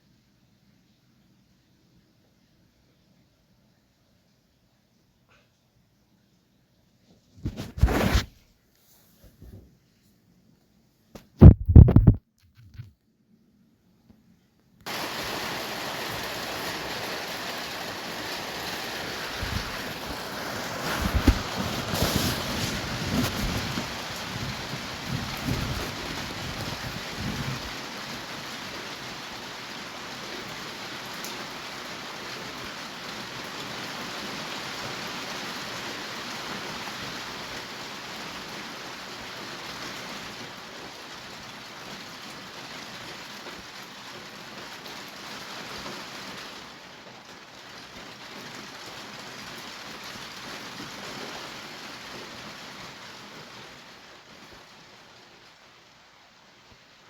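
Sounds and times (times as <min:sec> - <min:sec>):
heavy rain falling: 0:14.9 - 0:57.0
thunder rumble: 0:19.2 - 0:27.8.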